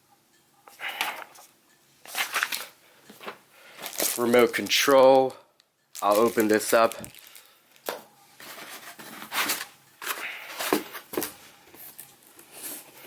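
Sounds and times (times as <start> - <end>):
packaging rustling and crinkling: 2.1 - 4.8, 6.0 - 13.0.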